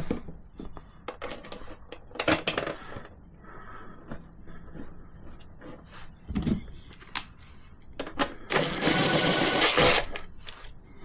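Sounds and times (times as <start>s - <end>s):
tools and parts clattering: 1.0s - 3.2s, 6.2s - 10.8s.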